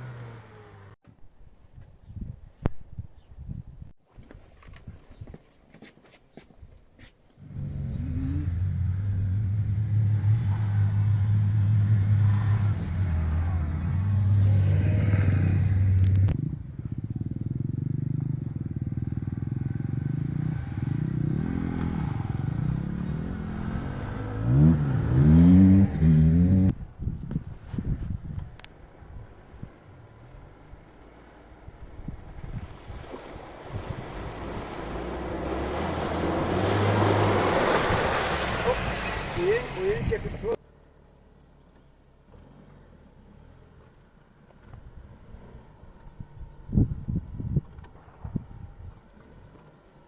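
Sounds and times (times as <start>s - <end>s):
car engine revving: 0.0s - 1.0s, 7.4s - 26.8s, 33.7s - 40.6s.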